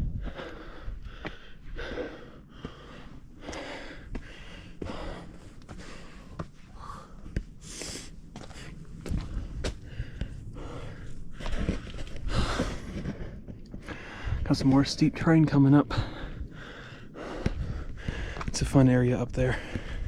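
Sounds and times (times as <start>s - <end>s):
person breathing hard: 0.0s - 14.5s, 15.9s - 18.6s, 19.4s - 20.0s
clicks of steps on rock: 17.4s - 18.8s.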